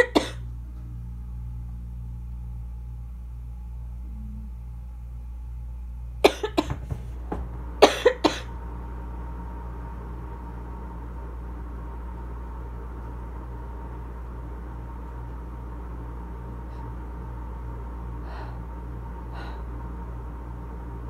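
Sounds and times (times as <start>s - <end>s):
person coughing: 0.0s - 0.4s, 6.2s - 7.0s, 7.8s - 8.5s
steady low hum: 0.0s - 21.0s.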